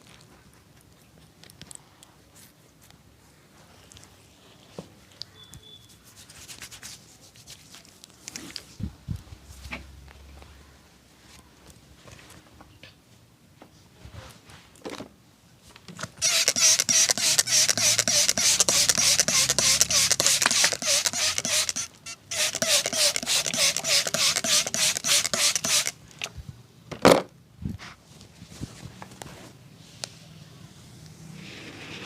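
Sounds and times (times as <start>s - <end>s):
rhythmic hand tapping on head: 16.2s - 25.9s.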